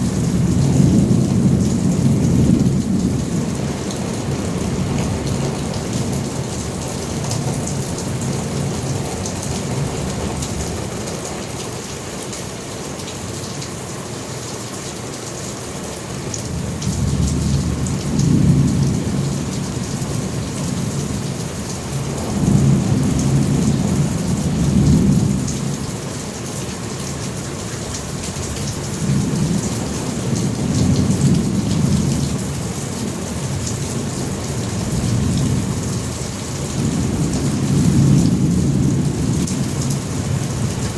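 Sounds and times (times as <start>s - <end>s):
deep rolling thunder: 0.0s - 6.7s, 16.5s - 26.0s, 28.2s - 40.9s.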